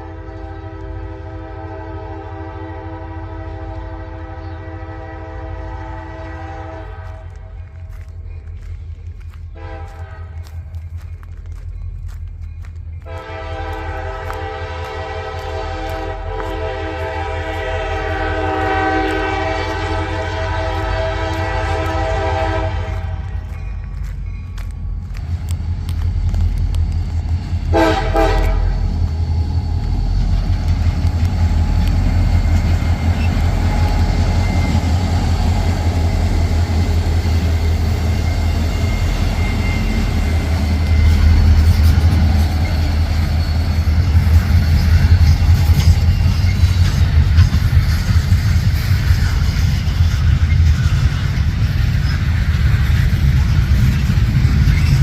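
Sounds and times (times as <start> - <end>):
locomotive horn blast: 0.0 - 7.6, 9.5 - 10.6, 13.1 - 23.5, 27.7 - 28.9
diesel locomotive rumble: 0.0 - 55.0.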